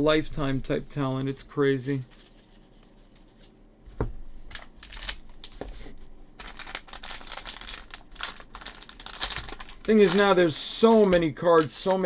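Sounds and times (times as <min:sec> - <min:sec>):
foil wrapper rustling and crinkling: 0:04.5 - 0:12.0.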